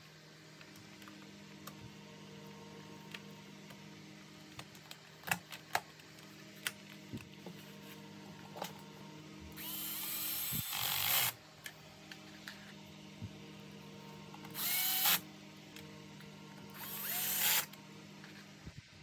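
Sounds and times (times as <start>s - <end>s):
electric screwdriver whining: 9.6s - 11.4s, 14.5s - 15.2s, 16.7s - 17.8s.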